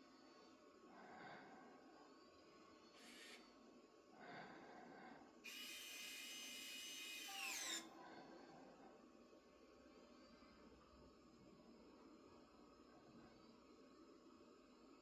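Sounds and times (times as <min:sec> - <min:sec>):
robot vacuum motor whining: 0:05.5 - 0:07.9.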